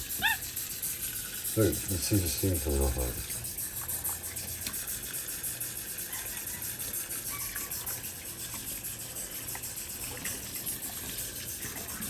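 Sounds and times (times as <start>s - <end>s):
water running from a tap: 0.0s - 12.0s.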